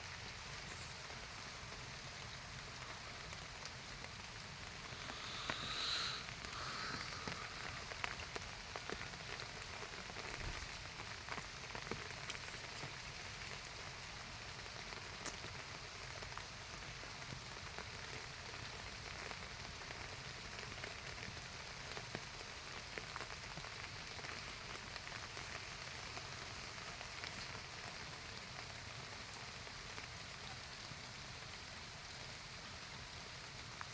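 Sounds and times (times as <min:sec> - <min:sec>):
steady hiss: 0:00.0 - 0:33.9
light ticks: 0:11.3 - 0:13.8, 0:15.2 - 0:15.5.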